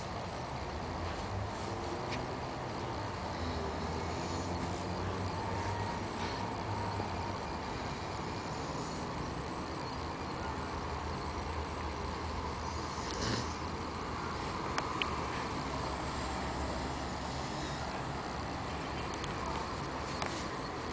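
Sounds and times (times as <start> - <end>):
man snoring: 3.1 - 6.6, 7.6 - 9.4, 12.6 - 13.9
small clicks: 14.6 - 15.2, 19.0 - 19.5.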